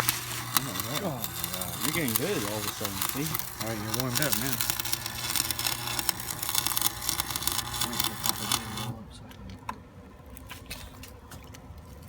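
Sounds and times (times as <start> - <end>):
arc welding crackling sizzle: 0.0 - 9.0.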